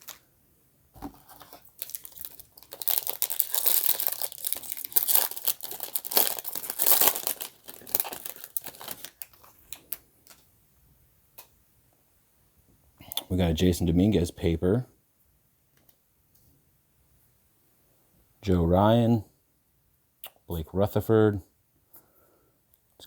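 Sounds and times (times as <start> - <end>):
wrapper torn open and crinkled: 0.0 - 0.2, 1.2 - 10.4.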